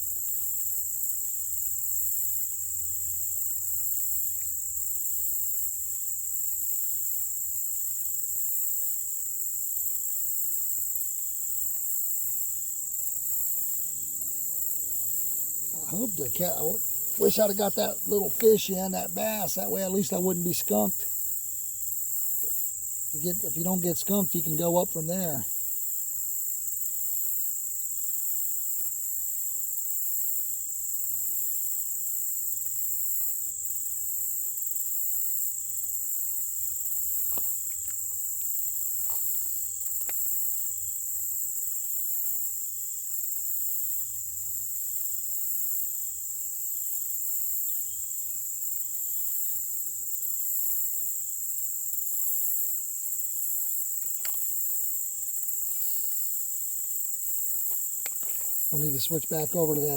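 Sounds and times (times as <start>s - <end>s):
insect chorus buzzing: 0.0s - 59.9s.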